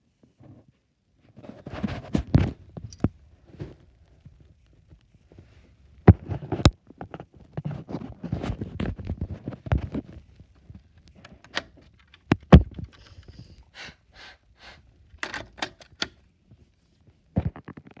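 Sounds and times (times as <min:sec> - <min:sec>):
scattered clicks and knocks: 0:15.2 - 0:16.2.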